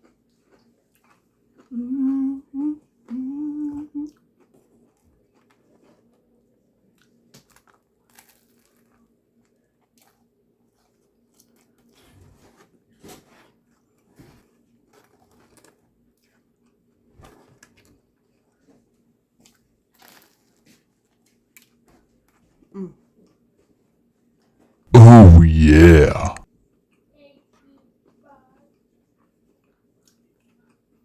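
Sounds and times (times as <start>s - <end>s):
chewing a sandwich: 0.0s - 12.0s
person humming with full mouth: 1.7s - 4.1s, 25.0s - 26.4s.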